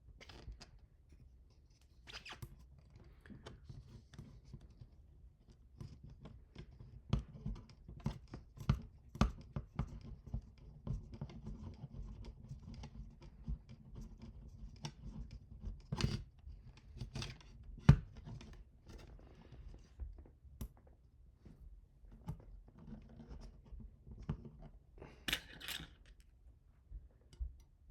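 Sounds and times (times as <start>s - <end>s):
tools and parts clicking and scraping: 25.1s - 26.3s.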